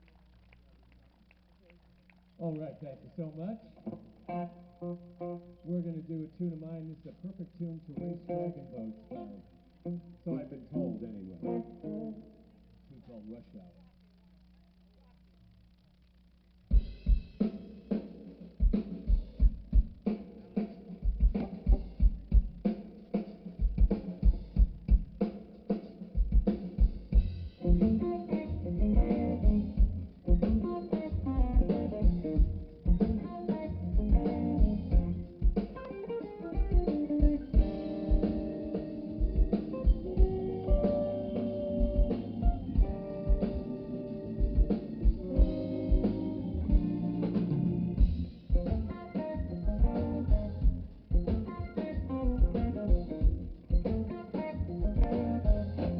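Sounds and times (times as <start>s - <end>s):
guitar melody: 3.3s - 12.6s, 27.2s - 55.9s
drum kit beat: 16.7s - 55.9s.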